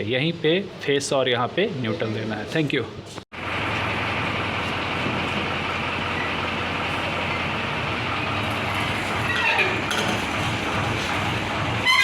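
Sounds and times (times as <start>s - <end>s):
diesel engine rumbling: 3.3s - 12.0s.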